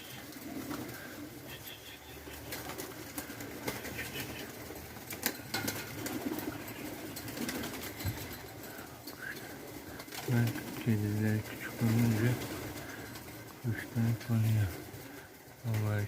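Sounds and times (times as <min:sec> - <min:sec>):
birds calling softly: 0:00.0 - 0:15.7.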